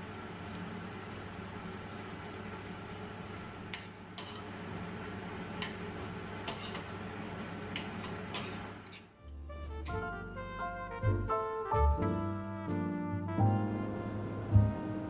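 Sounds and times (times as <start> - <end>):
music: 9.2 - 15.0.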